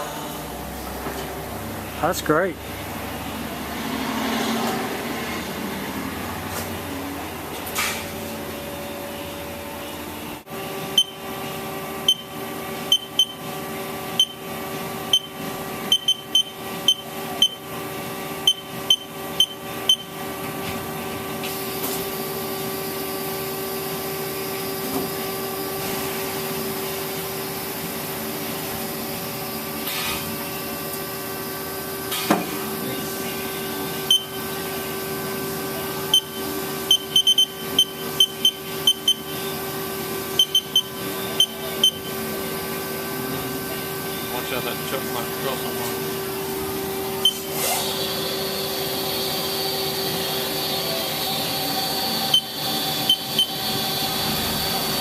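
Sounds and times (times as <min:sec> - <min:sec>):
short high electronic beeps: 0:36.1 - 0:39.4, 0:40.4 - 0:42.1, 0:47.2 - 0:47.6.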